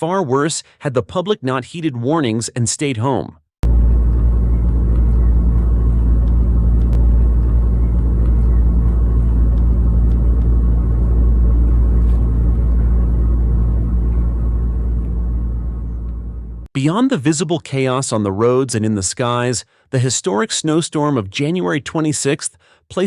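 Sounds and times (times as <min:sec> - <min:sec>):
motor vehicle engine rumble: 0:03.6 - 0:16.7.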